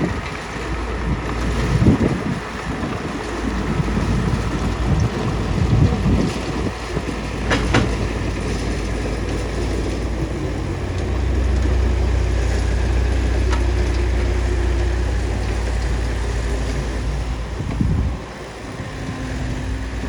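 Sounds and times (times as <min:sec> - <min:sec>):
bulldozer diesel engine droning: 0:00.0 - 0:20.0.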